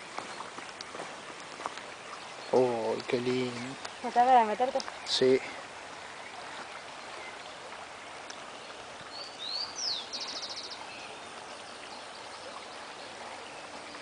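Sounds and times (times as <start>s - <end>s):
outdoor background hiss: 0.0s - 14.0s
bird chirping and trilling: 9.1s - 14.0s.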